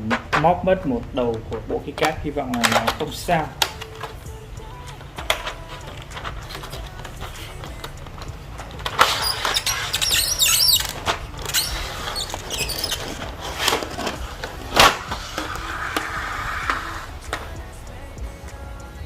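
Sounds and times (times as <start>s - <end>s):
packaging rustling and scraping: 5.0s - 17.6s.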